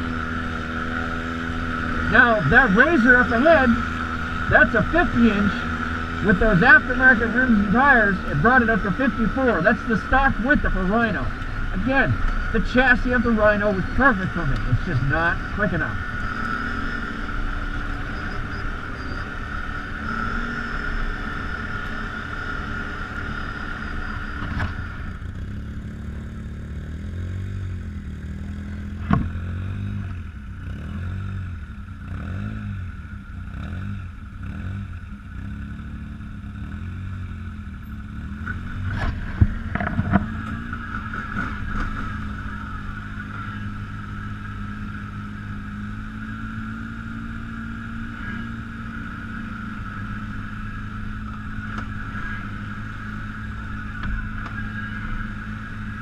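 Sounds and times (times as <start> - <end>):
steady high whine: 0.0 - 30.6, 35.2 - 56.0
atv engine running: 0.0 - 56.0.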